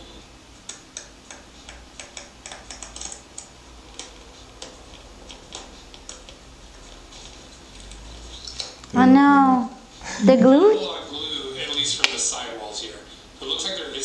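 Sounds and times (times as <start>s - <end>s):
light irregular clicks and ticks: 0.7s - 9.0s.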